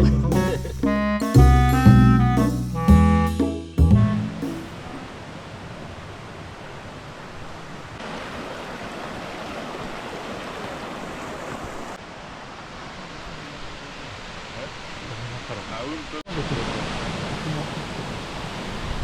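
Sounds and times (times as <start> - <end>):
waterfall rushing water: 4.6 - 19.0.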